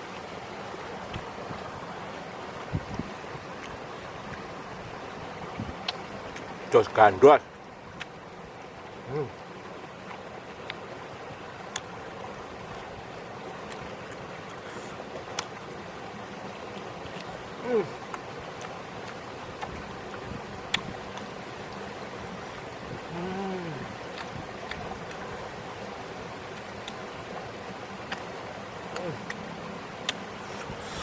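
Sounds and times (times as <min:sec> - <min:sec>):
person humming: 0:09.1 - 0:09.3, 0:17.6 - 0:18.0, 0:23.0 - 0:24.0, 0:28.9 - 0:29.3
clicks and smacks of eating: 0:11.7 - 0:11.9, 0:18.1 - 0:21.3, 0:24.0 - 0:25.2, 0:28.0 - 0:28.3, 0:28.9 - 0:29.4, 0:30.0 - 0:30.2.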